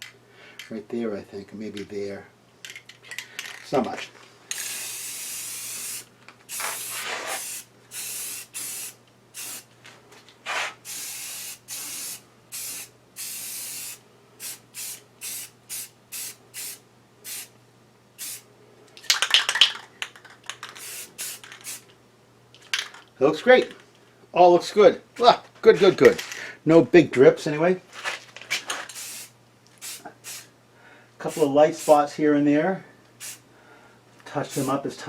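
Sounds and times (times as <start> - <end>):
spray can hissing squirts: 4.5 - 9.6, 18.2 - 18.4, 20.7 - 21.8, 28.9 - 30.5, 33.2 - 33.4.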